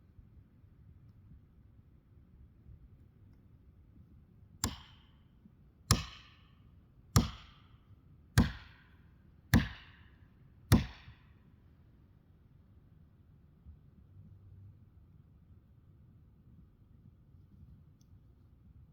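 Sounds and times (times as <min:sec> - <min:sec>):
axe chopping into tree: 0:04.6 - 0:05.1, 0:05.9 - 0:06.4, 0:07.2 - 0:07.7, 0:08.4 - 0:08.9, 0:09.6 - 0:10.0, 0:10.7 - 0:11.2.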